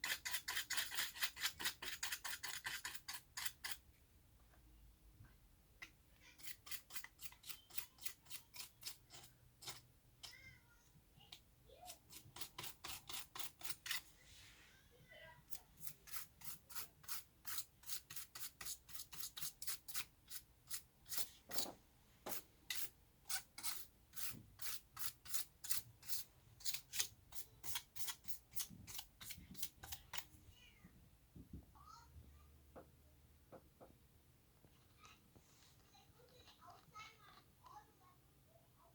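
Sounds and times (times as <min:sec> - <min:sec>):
rapid scratchy strokes: 0:00.0 - 0:03.8.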